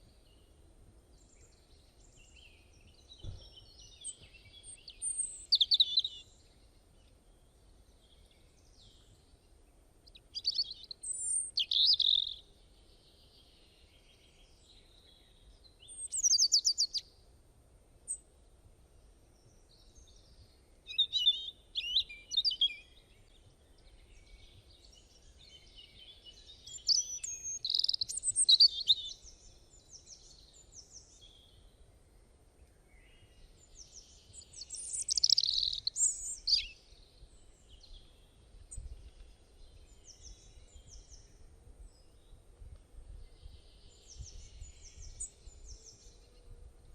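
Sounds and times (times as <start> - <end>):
birds chirping: 10.1 - 17.0, 19.5 - 31.7, 33.0 - 41.4.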